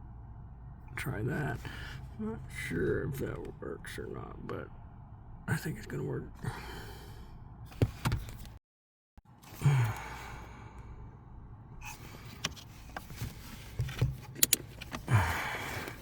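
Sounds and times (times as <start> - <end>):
person sighing heavily: 6.4 - 7.2, 9.5 - 10.9, 15.1 - 16.0.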